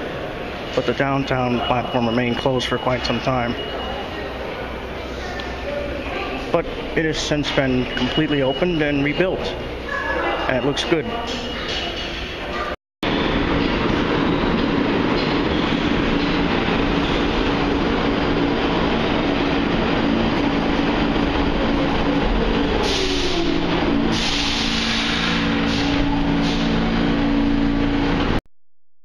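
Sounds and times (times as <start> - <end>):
subway train rumbling on track: 0.0 - 28.4
low motor hum: 13.0 - 28.4
hissing bursts: 24.1 - 26.7.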